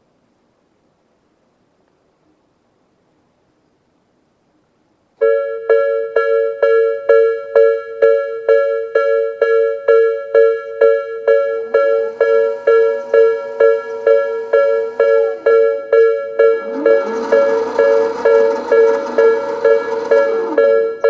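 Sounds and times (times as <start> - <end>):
faint low whine: 0.0 - 21.0
level-crossing warning bell: 5.2 - 21.0.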